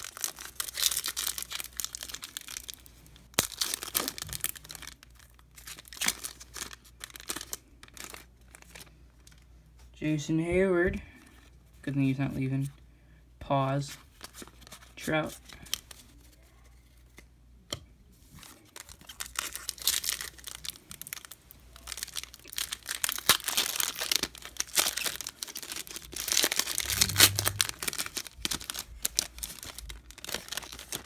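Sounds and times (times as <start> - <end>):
card pack wrapper crinkling: 0.0 - 9.4, 18.7 - 31.0.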